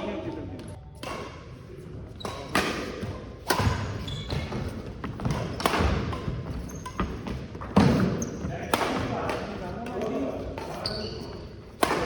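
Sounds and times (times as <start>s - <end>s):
racket striking shuttlecock: 2.2s - 4.6s, 5.2s - 9.5s, 11.7s - 12.0s.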